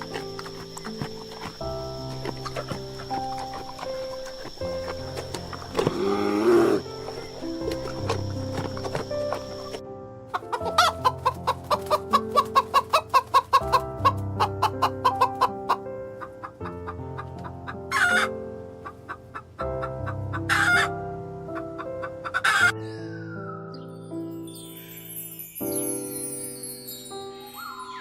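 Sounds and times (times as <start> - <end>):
music with sustained chords: 0.0 - 28.0
harsh animal calls: 2.2 - 9.8.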